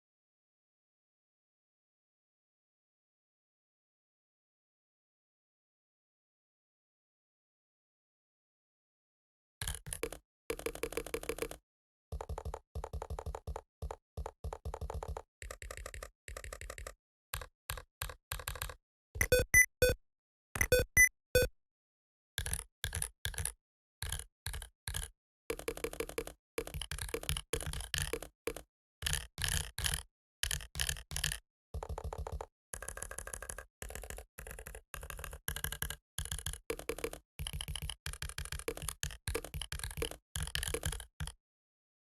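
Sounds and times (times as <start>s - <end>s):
typing on a keyboard: 9.6s - 19.7s, 22.4s - 41.4s.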